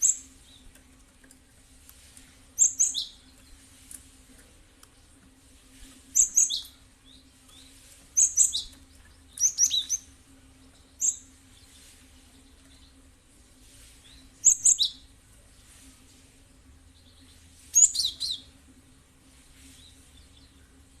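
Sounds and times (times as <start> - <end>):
bird chirping: 0.0 - 0.8, 2.6 - 3.7, 6.1 - 13.1, 14.0 - 15.1, 16.9 - 18.6
faint steady hum: 0.0 - 21.0.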